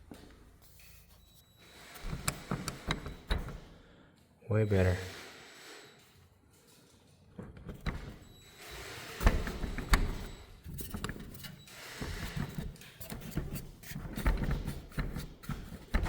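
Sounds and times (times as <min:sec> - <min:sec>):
door closing against frame: 0:09.2 - 0:10.3.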